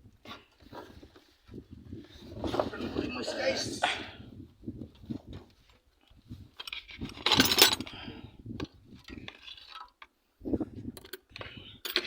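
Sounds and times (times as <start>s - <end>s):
metal parts clattering: 6.6s - 7.8s.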